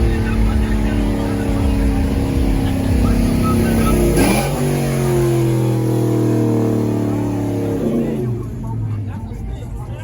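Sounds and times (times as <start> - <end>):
car engine rumbling and revving: 0.0 - 10.0.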